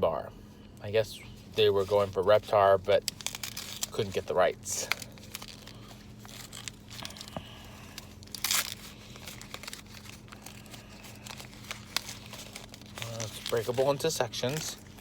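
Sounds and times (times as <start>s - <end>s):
wrapper crinkling and tearing: 1.5s - 15.0s
wrapper ripping loudly: 2.9s - 7.3s, 8.0s - 15.0s.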